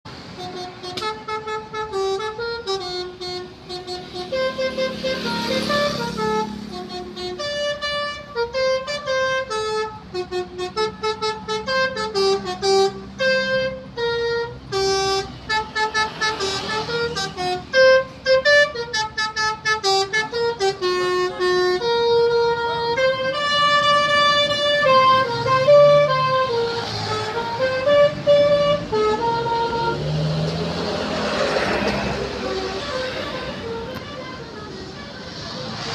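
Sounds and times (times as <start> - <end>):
musical air horn melody: 0.3 - 35.9.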